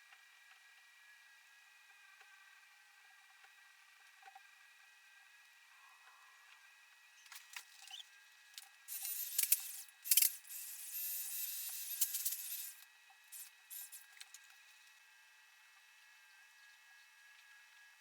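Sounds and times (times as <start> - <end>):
cicada distress buzz: 8.9 - 12.8, 13.4 - 14.1.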